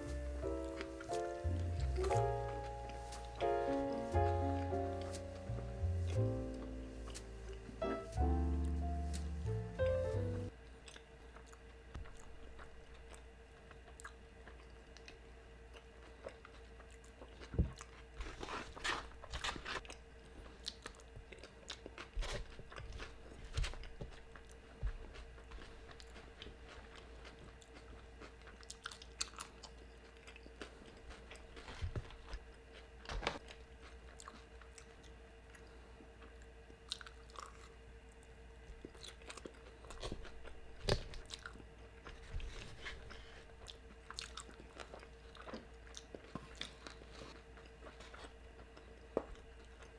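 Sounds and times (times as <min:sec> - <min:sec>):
crunchy chewing of food: 0:10.5 - 0:49.9.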